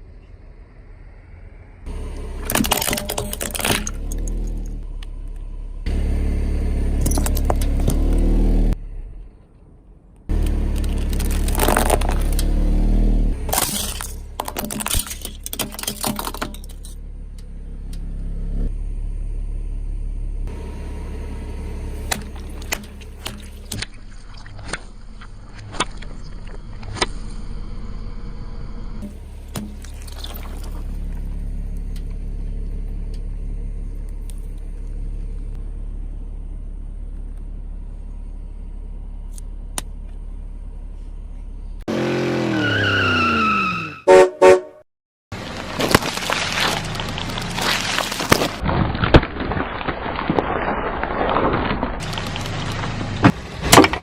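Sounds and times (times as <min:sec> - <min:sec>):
car engine running low: 0:00.0 - 0:43.5, 0:45.3 - 0:54.0
objects cracking under tyres: 0:02.1 - 0:05.5, 0:07.0 - 0:08.3, 0:10.2 - 0:18.1, 0:21.9 - 0:27.4, 0:29.0 - 0:35.6, 0:45.3 - 0:54.0.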